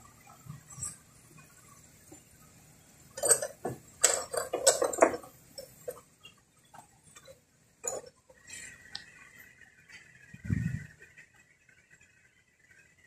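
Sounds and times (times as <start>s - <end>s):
metallic clinks and knocks: 3.2s - 8.4s.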